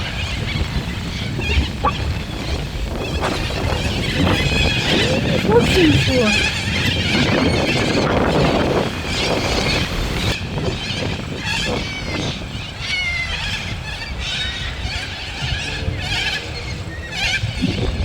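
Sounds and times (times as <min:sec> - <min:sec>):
wind rumble on microphone: 0:00.0 - 0:18.0
parrots squawking and chattering: 0:01.2 - 0:11.0.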